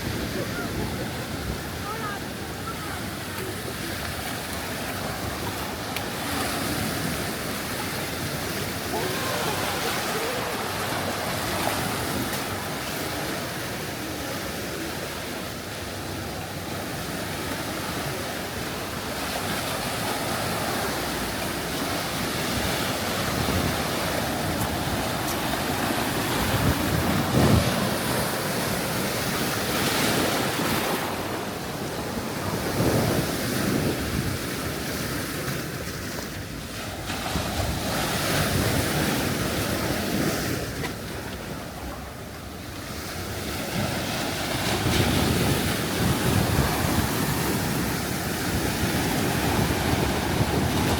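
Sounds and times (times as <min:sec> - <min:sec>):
wind buffeting microphone: 0:00.0 - 0:12.8, 0:21.8 - 0:40.8, 0:43.6 - 0:50.9
surf washing onto beach: 0:00.0 - 0:50.9.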